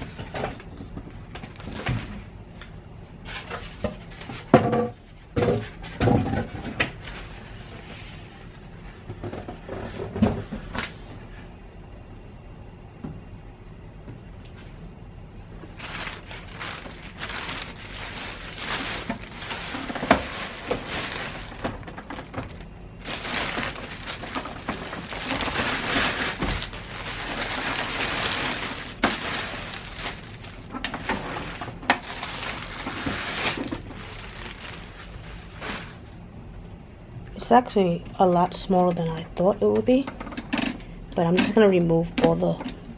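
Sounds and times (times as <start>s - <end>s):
plastic wrapping rustling: 0.0s - 2.3s, 15.6s - 36.2s.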